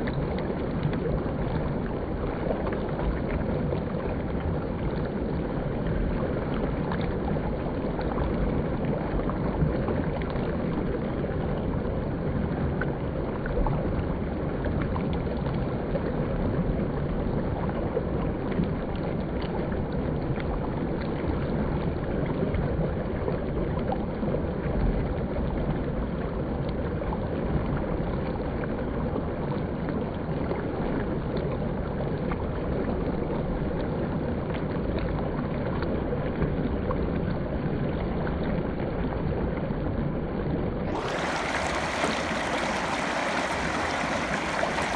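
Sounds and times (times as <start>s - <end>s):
river water rushing: 40.9s - 44.9s.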